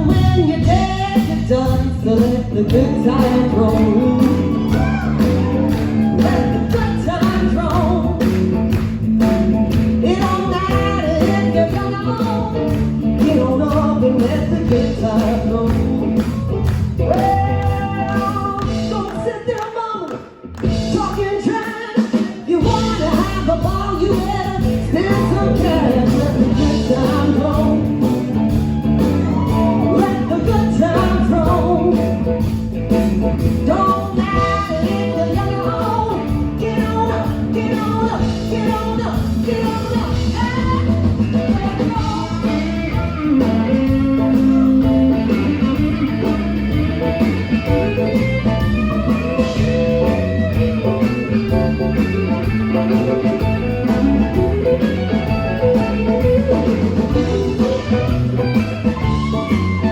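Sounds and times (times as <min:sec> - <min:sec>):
lead guitar lines: 0:00.0 - 0:19.4, 0:22.6 - 0:59.9
live blues band playing: 0:00.0 - 0:59.9.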